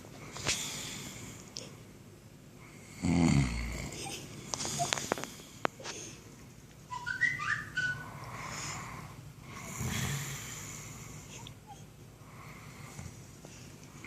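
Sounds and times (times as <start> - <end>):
person snoring: 2.8 - 4.0
high nasal whistle: 6.9 - 8.2.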